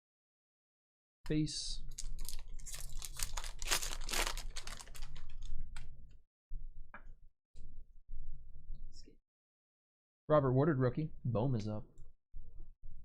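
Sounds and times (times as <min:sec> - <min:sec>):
packaging crinkling: 0:01.9 - 0:05.6.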